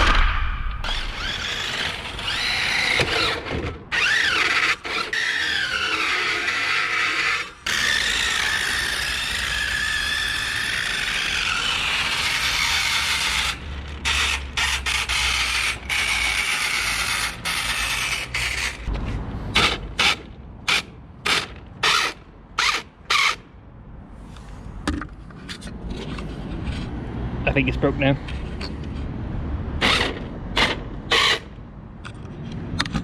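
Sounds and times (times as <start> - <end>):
toy car electric motor whining: 0.8 - 18.9, 19.6 - 23.4, 29.8 - 31.5.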